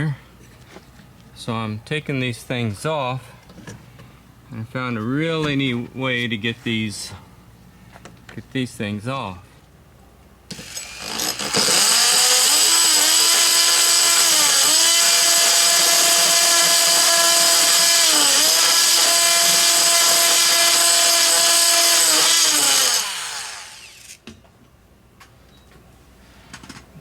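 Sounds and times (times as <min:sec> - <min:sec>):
power tool cutting metal: 0:10.5 - 0:24.2.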